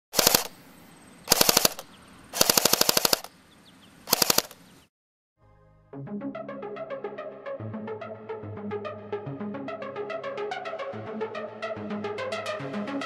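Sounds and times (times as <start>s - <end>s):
airsoft gun firing bursts: 0.2s - 0.6s, 1.3s - 3.3s, 4.1s - 4.6s.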